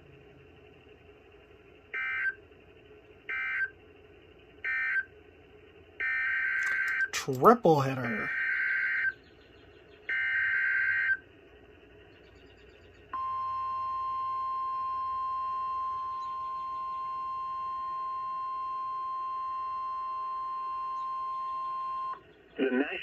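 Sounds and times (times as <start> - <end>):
steady warning alarm tone: 1.9 - 2.4, 3.3 - 3.7, 4.6 - 5.1, 6.0 - 9.2, 10.1 - 11.2, 13.1 - 22.2.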